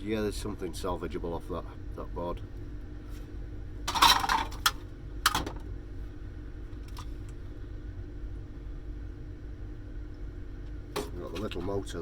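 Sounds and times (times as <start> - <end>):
steady low hum: 0.0 - 12.0
metal parts clattering: 3.9 - 4.7.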